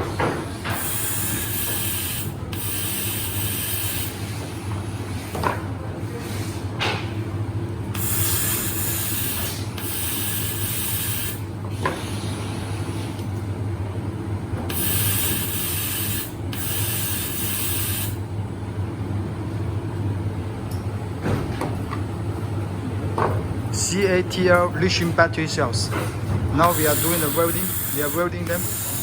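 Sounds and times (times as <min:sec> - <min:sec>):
welding machinery humming: 0:00.0 - 0:05.2, 0:07.5 - 0:21.0, 0:23.6 - 0:29.0
hissing bursts: 0:26.6 - 0:29.0.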